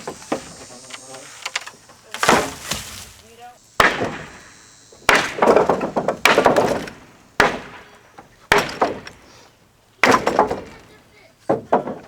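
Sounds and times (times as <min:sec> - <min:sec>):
wood splintering and boards falling: 0:00.0 - 0:09.3, 0:10.0 - 0:12.0
heavy blows on wood: 0:00.0 - 0:09.4.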